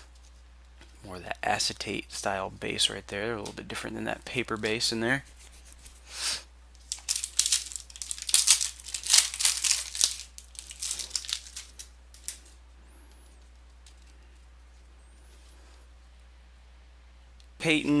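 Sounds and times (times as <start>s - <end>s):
foil wrapper crinkling and tearing: 6.8s - 12.5s.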